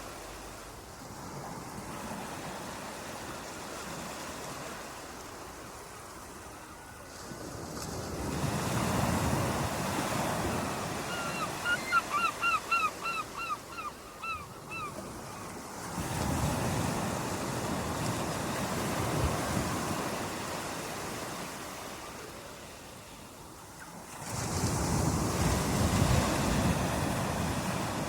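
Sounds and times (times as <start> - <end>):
bird calling rapidly: 11.0 - 15.0
ocean surf washing onto beach: 15.0 - 28.0.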